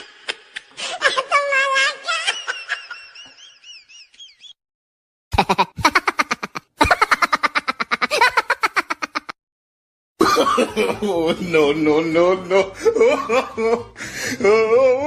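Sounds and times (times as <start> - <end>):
rapid pulsed laughter: 5.4 - 9.4.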